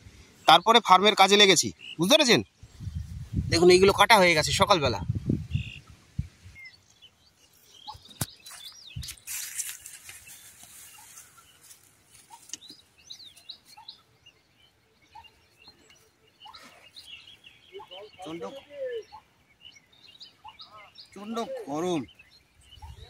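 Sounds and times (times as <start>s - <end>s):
small birds chirping: 0.0s - 23.0s
brief rustle: 8.1s - 12.8s.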